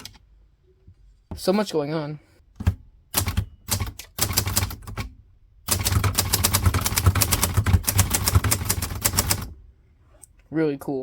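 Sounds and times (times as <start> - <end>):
typewriter keys clacking: 5.7 - 9.5.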